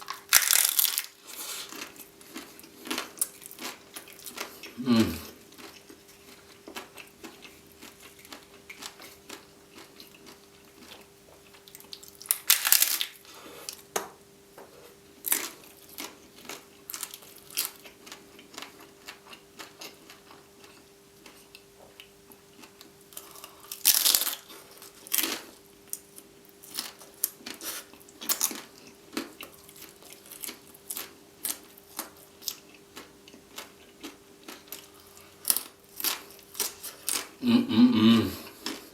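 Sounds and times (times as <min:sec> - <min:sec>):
faint steady hum: 0:00.0 - 0:38.9
crunching bites: 0:00.1 - 0:01.9, 0:12.1 - 0:13.2.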